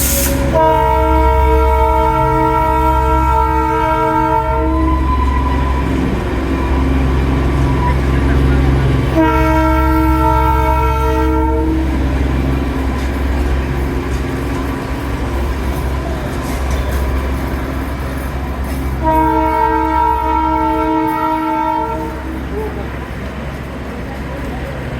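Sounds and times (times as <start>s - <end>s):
train horn blasts: 0.0s - 13.6s, 19.0s - 22.8s.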